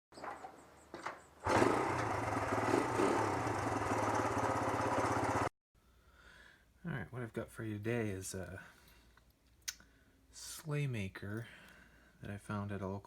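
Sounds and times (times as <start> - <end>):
small engine running: 1.4 - 5.5.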